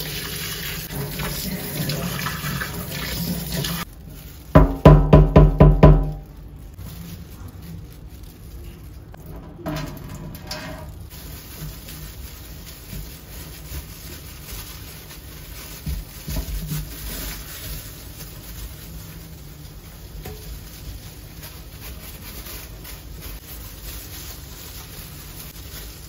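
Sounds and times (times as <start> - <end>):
soft rubbing and rustling: 6.2 - 26.0.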